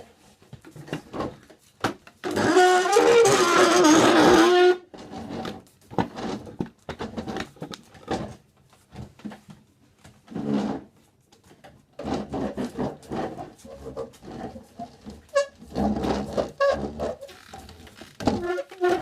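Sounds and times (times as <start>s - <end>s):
chairs scraping on floor: 2.2s - 8.3s, 10.3s - 11.0s, 12.0s - 19.0s.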